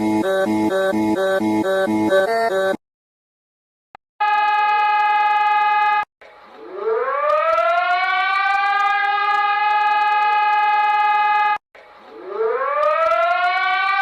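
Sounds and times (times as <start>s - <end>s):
civil defense siren: 4.2s - 14.0s.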